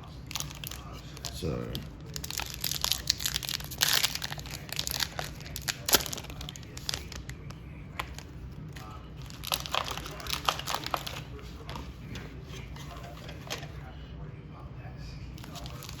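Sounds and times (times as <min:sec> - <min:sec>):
card packs crinkling: 0:00.0 - 0:13.9, 0:15.4 - 0:16.0.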